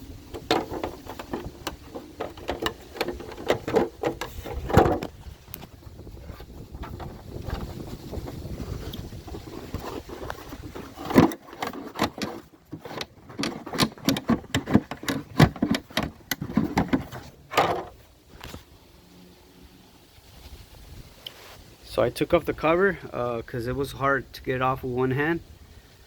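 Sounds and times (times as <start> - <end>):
hard plastic knocks and scrapes: 0.0 - 18.6
rumbly handling noise: 0.0 - 18.7.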